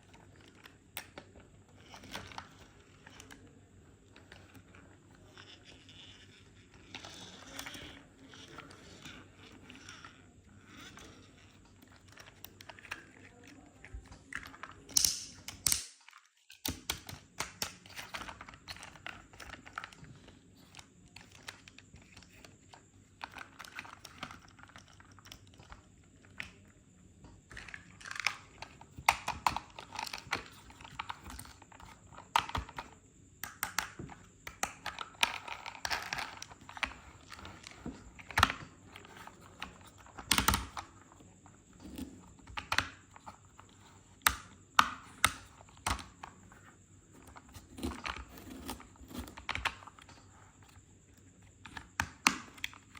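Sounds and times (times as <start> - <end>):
toy cars clicking and tapping: 0.1 - 26.7.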